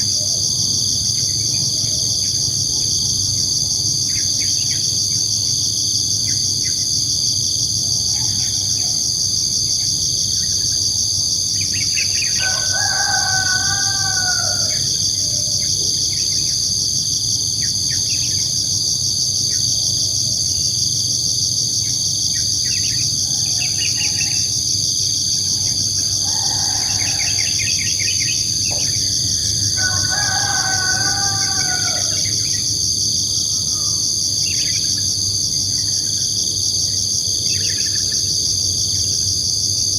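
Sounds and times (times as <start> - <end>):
high-pitched insect chorus: 0.0 - 39.9
rooster crowing: 12.2 - 15.6, 23.0 - 32.8, 33.4 - 34.2.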